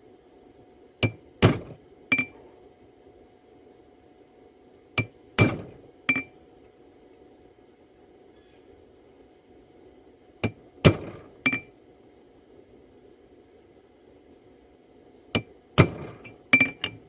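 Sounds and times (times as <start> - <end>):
hammer striking steel on anvil: 15.4 - 17.0.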